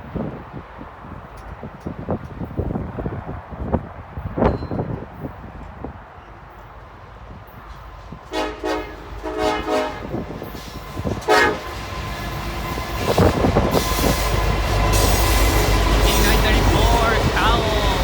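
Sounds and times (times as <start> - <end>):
train engine and wheel rumble: 0.0 - 18.0
train horn blasts: 8.3 - 10.2, 11.0 - 11.8, 13.1 - 18.0.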